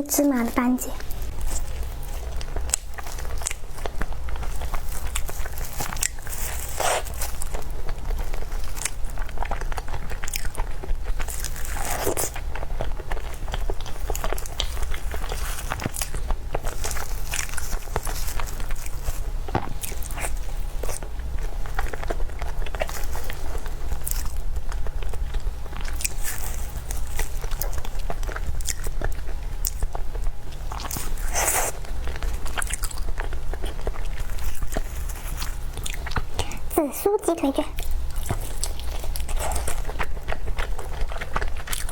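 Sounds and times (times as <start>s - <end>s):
steady low hum: 0.0s - 41.9s
chewing with wet mouth clicks: 1.0s - 36.6s, 37.8s - 41.9s.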